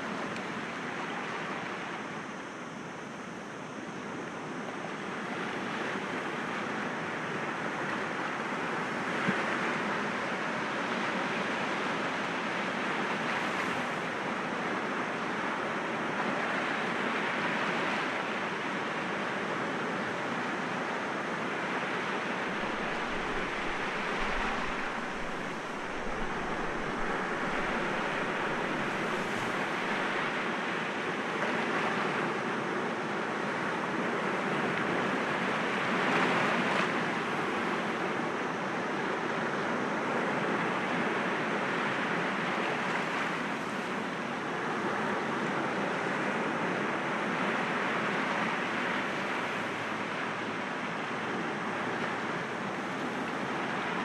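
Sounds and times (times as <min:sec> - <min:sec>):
sea waves breaking on rocks: 0:22.5 - 0:30.5.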